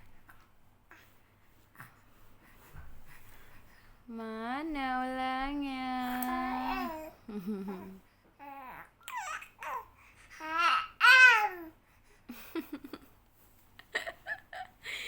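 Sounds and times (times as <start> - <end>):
baby cooing: 6.3 - 11.7.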